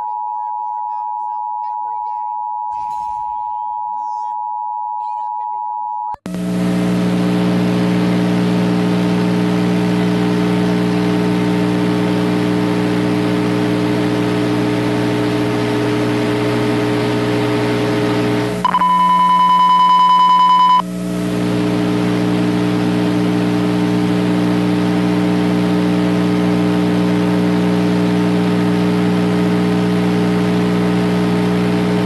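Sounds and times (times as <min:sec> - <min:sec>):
electrical buzzing hum: 0:06.3 - 0:32.0
high beep tone: 0:18.6 - 0:20.8.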